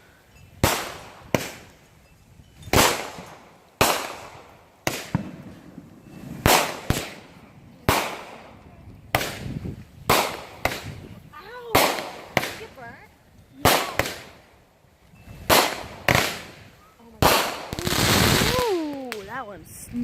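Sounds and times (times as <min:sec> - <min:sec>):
fireworks bangs echoing: 0:00.6 - 0:01.8, 0:02.7 - 0:12.8, 0:13.6 - 0:14.5, 0:15.4 - 0:19.1.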